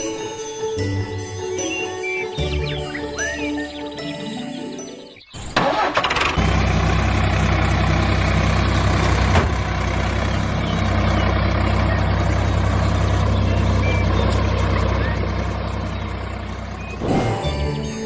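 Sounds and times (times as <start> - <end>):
vehicle engine idling: 5.6 - 18.0.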